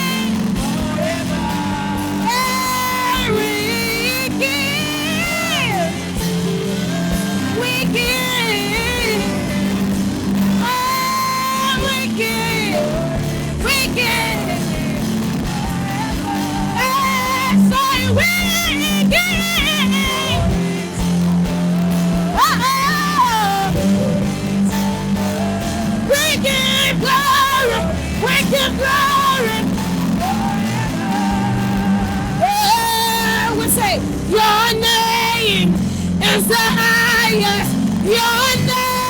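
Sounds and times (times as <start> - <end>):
keyboard and band accompaniment: 0.0 - 39.0
person singing melismatic phrases: 10.6 - 21.0, 22.3 - 24.4, 25.2 - 39.0.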